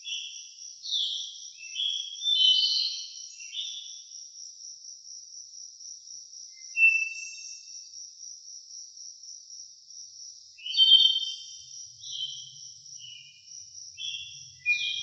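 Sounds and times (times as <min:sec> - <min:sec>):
high insect trill: 0:03.2 - 0:15.0
bird calling: 0:14.0 - 0:15.0.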